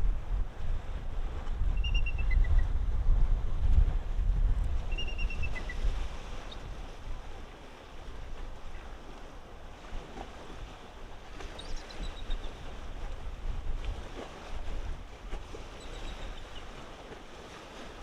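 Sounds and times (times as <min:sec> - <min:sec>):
wind rumble on microphone: 0:00.0 - 0:18.0
eagle piping calls: 0:01.8 - 0:02.6, 0:04.9 - 0:05.8.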